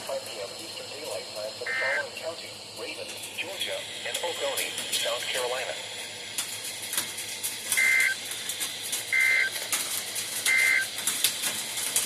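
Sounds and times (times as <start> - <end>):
radio static with crackles: 0.0 - 11.4
digital data bursts: 1.4 - 2.2, 7.7 - 8.2, 9.1 - 9.6, 10.4 - 10.9.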